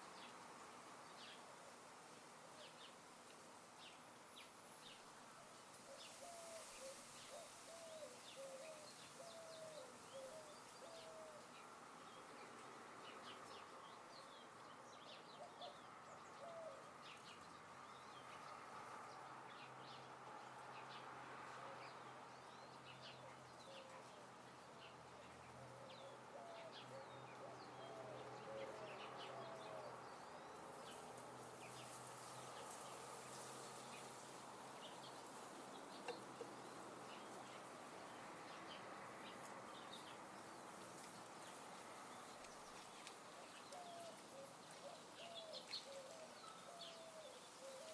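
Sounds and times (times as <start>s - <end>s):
background hiss: 0.0s - 47.9s
birds chirping: 24.8s - 47.9s.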